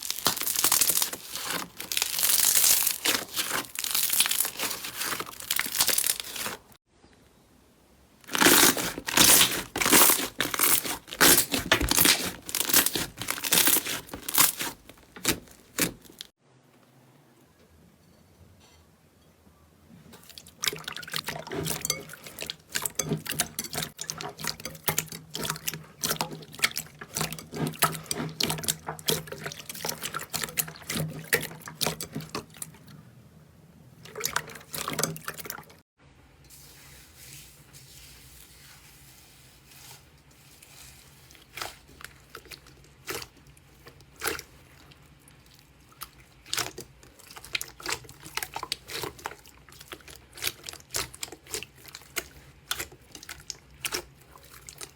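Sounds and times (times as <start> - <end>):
slime squelching and popping: 0.0 - 6.7, 8.3 - 16.3, 41.4 - 54.9.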